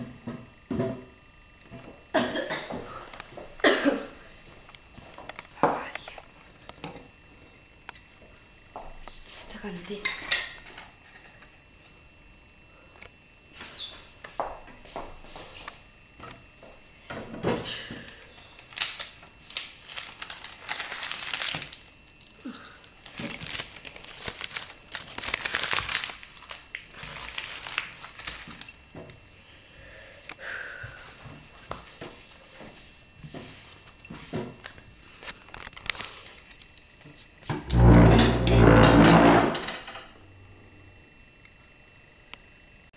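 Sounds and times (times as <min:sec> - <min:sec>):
crinkling and rustling: 0:18.6 - 0:29.1.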